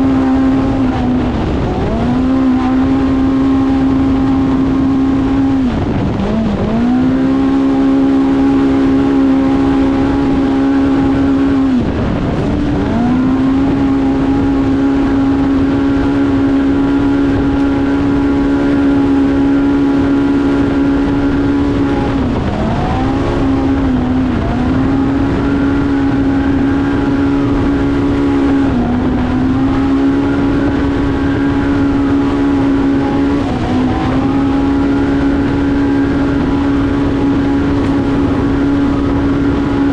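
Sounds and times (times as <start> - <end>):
engine at full throttle: 0.0 - 39.9
tyre and wind noise: 0.0 - 39.9.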